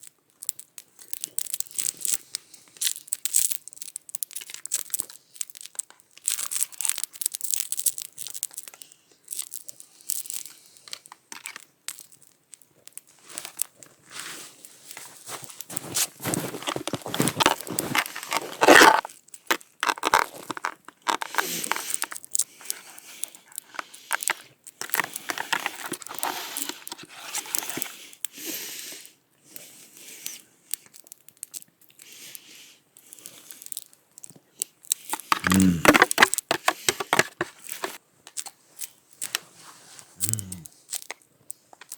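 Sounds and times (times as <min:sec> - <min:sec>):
crinkling and rustling: 0:03.0 - 0:28.2, 0:33.2 - 0:41.9
eating noises: 0:15.8 - 0:26.4, 0:35.0 - 0:38.0, 0:40.2 - 0:40.7.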